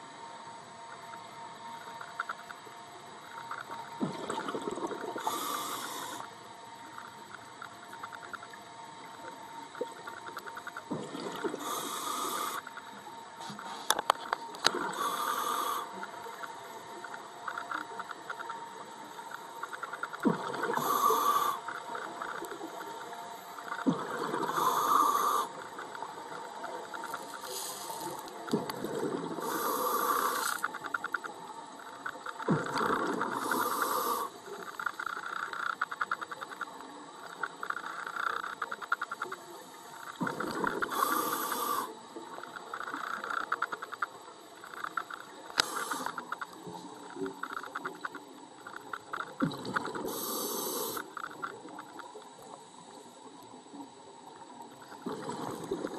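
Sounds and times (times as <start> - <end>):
bubbles crackling: 3.5 - 5.8, 9.7 - 12.6, 14.5 - 39.3, 40.0 - 52.4, 54.7 - 55.9
scuba regulator breathing: 5.2 - 6.3, 11.5 - 12.8, 14.6 - 16.1, 20.6 - 22.1, 24.1 - 25.8, 29.4 - 31.0, 32.7 - 34.8, 40.3 - 42.0, 45.6 - 46.4, 50.0 - 51.3.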